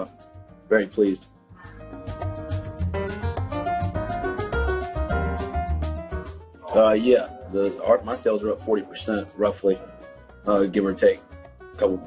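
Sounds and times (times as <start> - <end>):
music with bass beat: 1.6 - 8.2.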